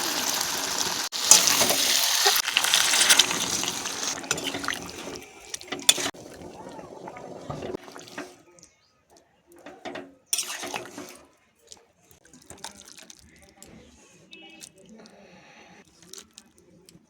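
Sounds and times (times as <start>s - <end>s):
water pouring in splashy bursts: 0.0s - 8.5s, 10.4s - 11.3s, 12.2s - 13.8s.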